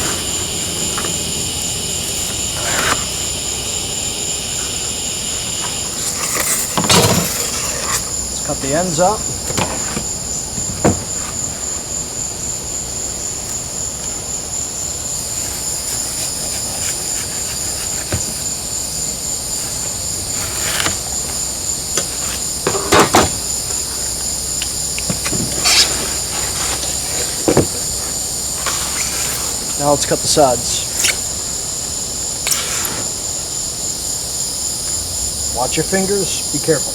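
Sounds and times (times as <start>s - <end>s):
crickets chirring: 0.0s - 36.9s
blade cutting styrofoam: 5.5s - 8.2s, 25.2s - 31.4s, 32.4s - 33.2s.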